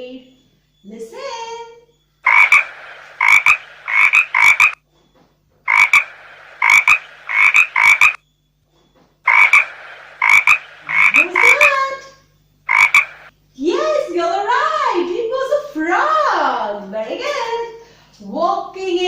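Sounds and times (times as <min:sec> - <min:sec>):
frog croaking: 0:02.2 - 0:04.8, 0:05.7 - 0:08.2, 0:09.3 - 0:12.0, 0:12.7 - 0:13.3.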